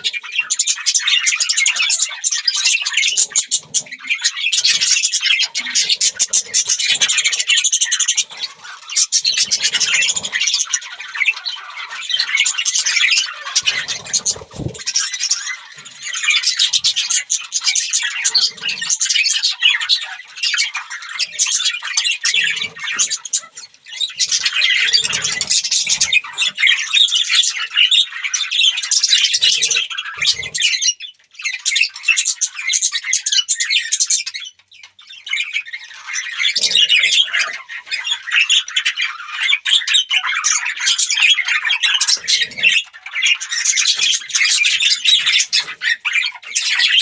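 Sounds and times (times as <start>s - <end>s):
budgerigars chirping: 0.0s - 47.0s.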